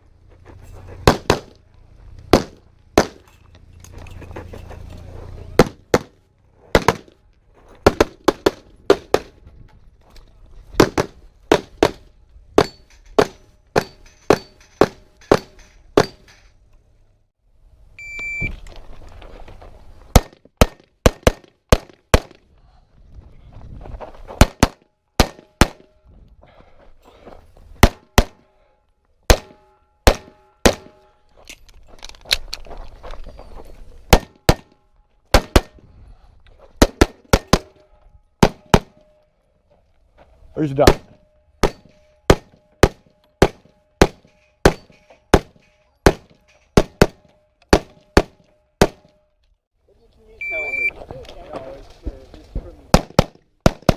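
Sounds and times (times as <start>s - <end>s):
pistol shots: 1.0s - 1.6s, 2.3s - 3.2s, 5.6s - 7.2s, 20.2s - 22.4s, 24.4s - 25.9s, 34.1s - 35.8s, 40.8s - 49.2s, 52.9s - 53.9s
steel targets ringing: 12.6s - 16.4s, 29.4s - 31.3s, 43.8s - 46.7s
short electronic beep: 18.0s - 18.6s, 50.4s - 51.0s.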